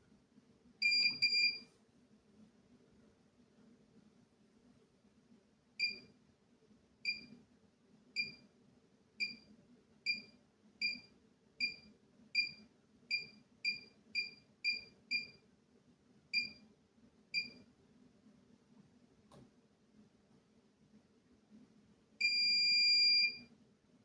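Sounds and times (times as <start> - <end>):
short high beeps: 0.8 - 1.6.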